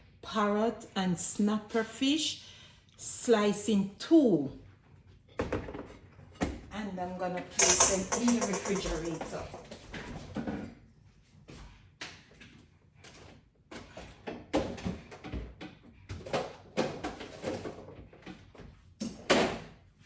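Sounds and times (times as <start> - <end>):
plates knocking on fridge shelves: 7.6 - 9.4.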